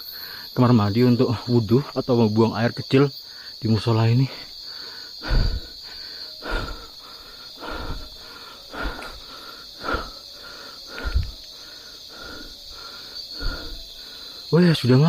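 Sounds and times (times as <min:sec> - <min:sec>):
crickets and insects chirping: 0:00.0 - 0:15.0
footsteps: 0:10.9 - 0:11.5.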